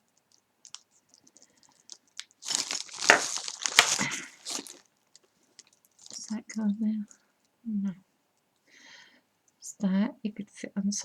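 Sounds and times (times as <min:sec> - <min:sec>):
sharp crackles: 0:00.2 - 0:06.6
plastic packaging crinkling: 0:00.2 - 0:07.2.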